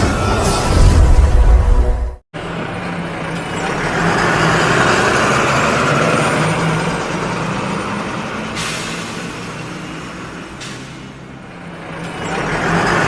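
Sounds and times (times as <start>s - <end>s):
bus engine running: 0.0s - 13.0s
air brake hiss: 8.6s - 9.4s.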